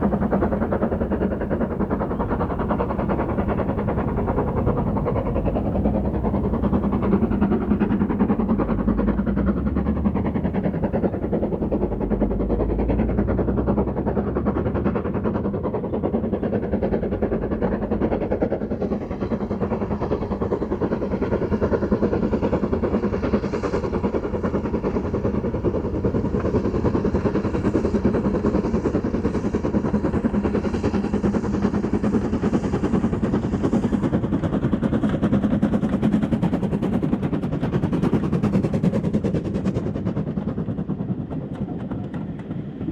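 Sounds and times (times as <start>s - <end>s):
deep rumble: 0.0s - 14.0s
steam train clattering: 0.0s - 42.9s.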